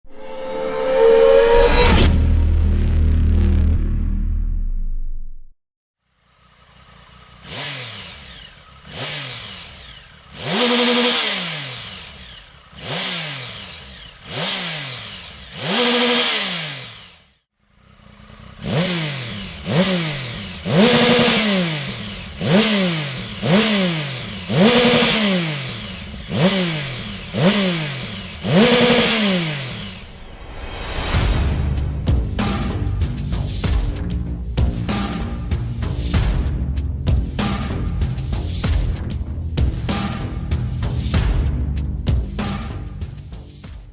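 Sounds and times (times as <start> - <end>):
motorcycle engine revving: 6.1 - 30.2.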